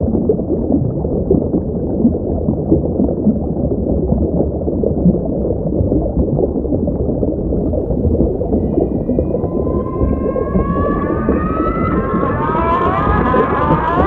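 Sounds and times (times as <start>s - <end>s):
low muffled gurgling rumble: 7.6s - 14.0s.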